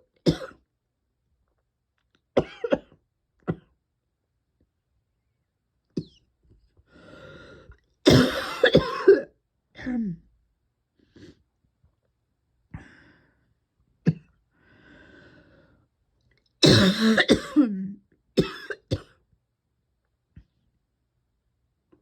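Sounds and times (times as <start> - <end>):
person coughing: 0.2 - 0.6, 2.4 - 3.8, 8.1 - 10.0, 14.0 - 14.3, 16.6 - 19.2
person breathing in: 6.9 - 7.8, 14.6 - 15.8.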